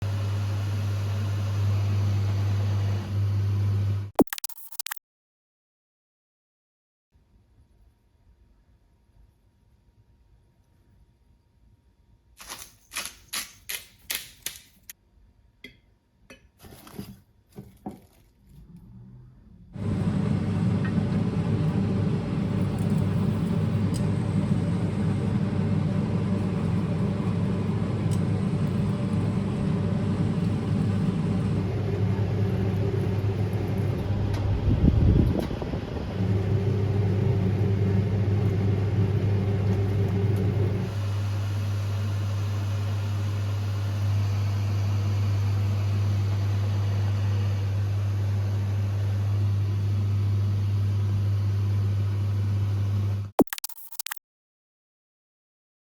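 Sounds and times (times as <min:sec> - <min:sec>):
low mechanical hum: 0:00.0 - 0:04.7, 0:15.1 - 0:54.2.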